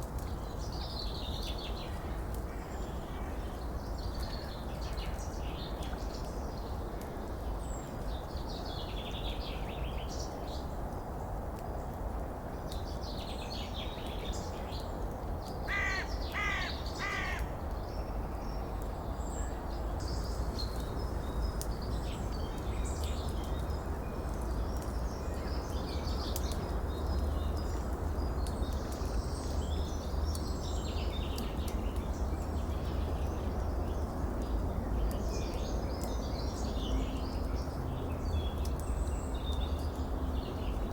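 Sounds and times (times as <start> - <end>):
small birds chirping: 12.7 - 40.9
harsh bird calls: 15.7 - 17.5.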